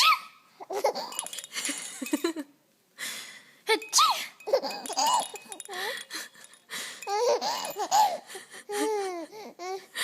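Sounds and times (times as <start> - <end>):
baby giggling: 0.0 - 2.2.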